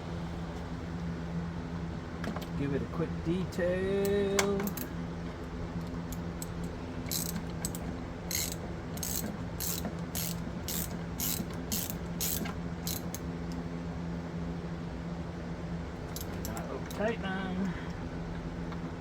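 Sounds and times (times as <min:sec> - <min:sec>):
ratchet wrench clicking: 0:06.4 - 0:13.2.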